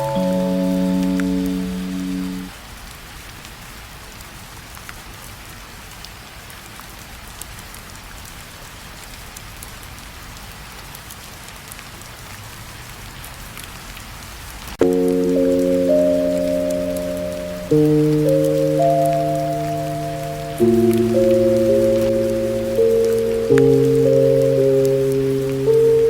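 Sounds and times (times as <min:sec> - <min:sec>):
mellow lo-fi music: 0:00.0 - 0:02.5, 0:14.8 - 0:26.0
rain falling: 0:00.0 - 0:26.0
drops ticking: 0:14.8 - 0:26.0.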